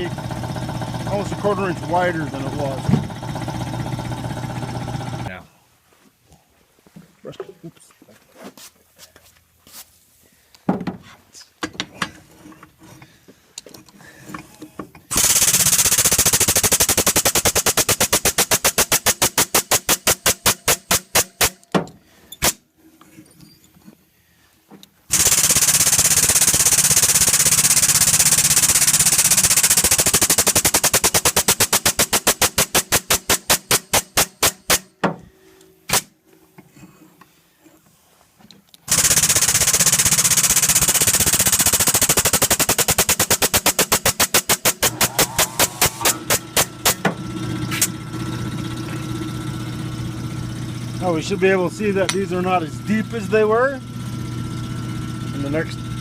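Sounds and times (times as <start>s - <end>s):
power hammer pounding steel: 39.0s - 47.2s.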